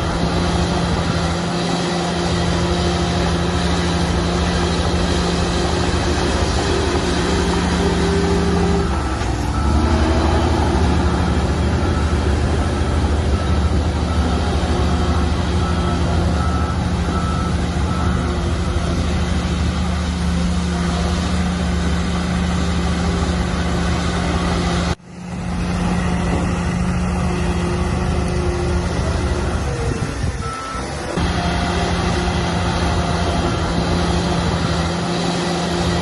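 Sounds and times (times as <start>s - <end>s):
diesel machinery running: 0.0s - 36.0s
reversing alarm beeping: 4.4s - 19.5s, 27.2s - 35.1s.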